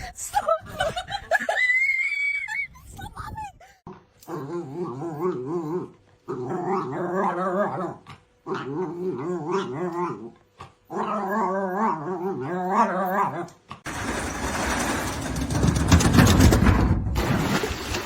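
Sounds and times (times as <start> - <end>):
dog growling: 3.9 - 13.6.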